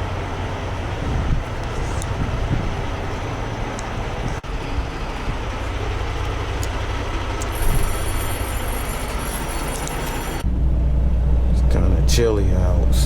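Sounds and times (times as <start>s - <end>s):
wind buffeting microphone: 0.3s - 5.6s.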